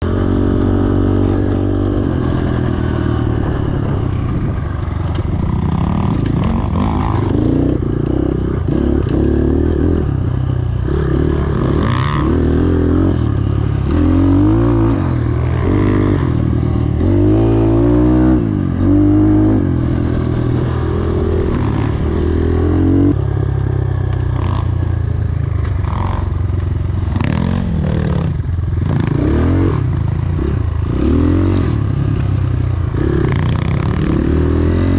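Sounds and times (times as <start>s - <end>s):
motorcycle engine revving: 0.0s - 34.9s.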